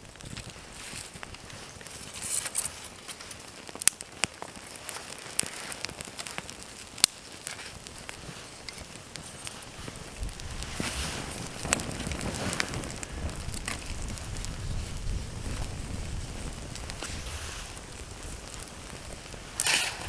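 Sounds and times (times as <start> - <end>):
campfire crackling: 0.0 - 20.0
faint hiss: 7.6 - 20.0.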